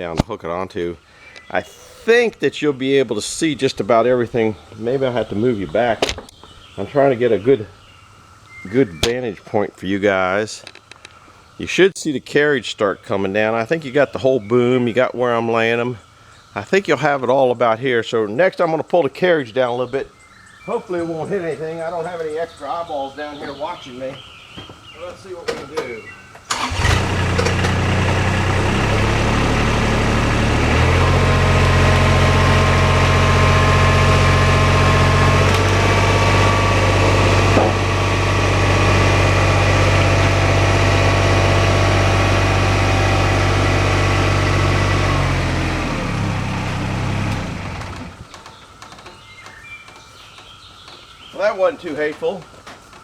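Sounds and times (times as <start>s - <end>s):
diesel engine running: 26.5s - 48.3s.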